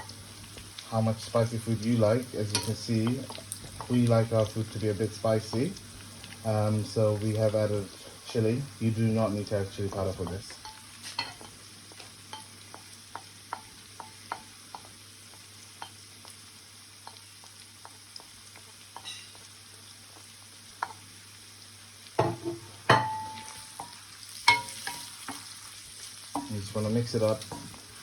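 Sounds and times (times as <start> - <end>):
onions sizzling in oil: 0.0 - 28.0
utensil knocking against pan: 22.2 - 23.4.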